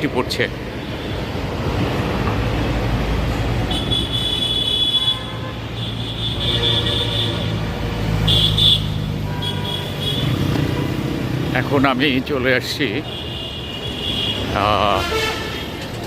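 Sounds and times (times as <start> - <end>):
traffic engines running: 0.0 - 16.0
vehicle horns honking: 3.7 - 11.0, 13.0 - 15.8.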